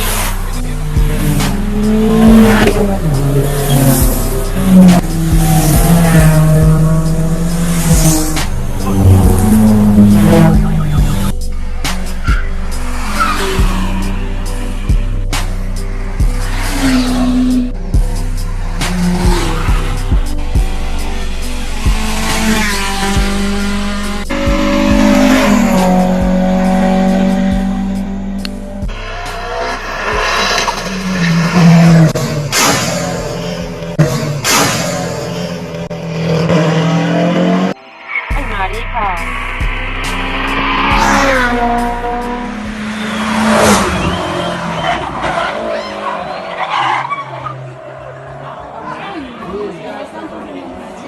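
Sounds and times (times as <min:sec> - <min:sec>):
race car engine: 0:00.0 - 0:51.0
music with kick-drum beat: 0:17.4 - 0:20.8.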